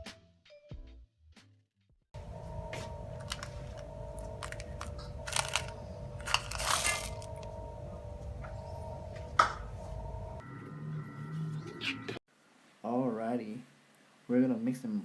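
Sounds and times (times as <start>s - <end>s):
steady low hum: 2.2s - 12.2s
bag crinkling and rustling: 3.2s - 7.4s.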